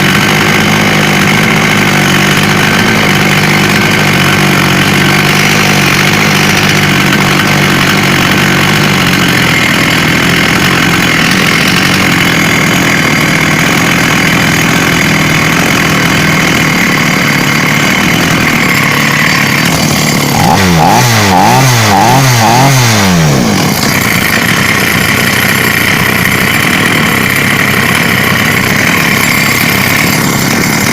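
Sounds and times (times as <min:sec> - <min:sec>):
chainsaw engine running and revving: 0:00.0 - 0:30.9.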